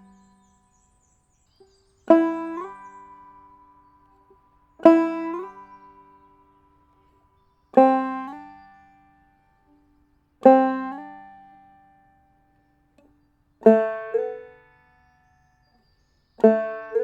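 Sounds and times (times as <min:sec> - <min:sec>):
banjo notes sliding up: 0:02.1 - 0:12.2, 0:13.0 - 0:14.9, 0:16.4 - 0:17.0.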